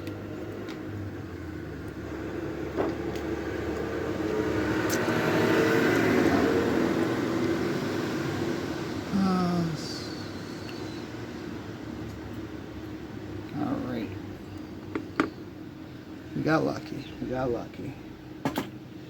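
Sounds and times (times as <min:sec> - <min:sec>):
vehicle passing by: 0:01.7 - 0:09.1.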